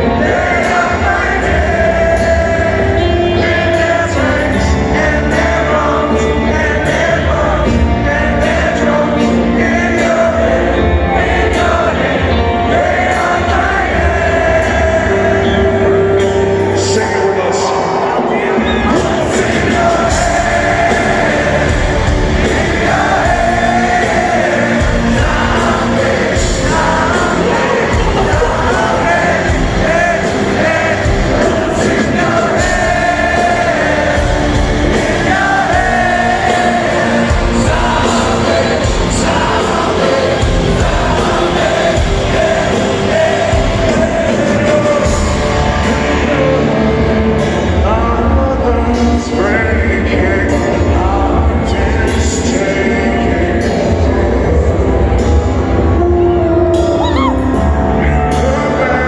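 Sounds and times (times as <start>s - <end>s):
heavy rock band playing: 0.0s - 59.0s
man singing lead vocal: 0.0s - 59.0s.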